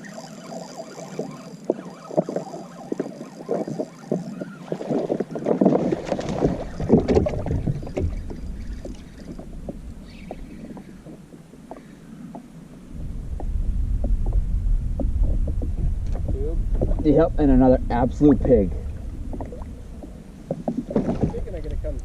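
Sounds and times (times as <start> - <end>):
water splashing: 0.0 - 11.2, 18.1 - 21.9
wind buffeting microphone: 2.9 - 11.7, 12.4 - 22.0.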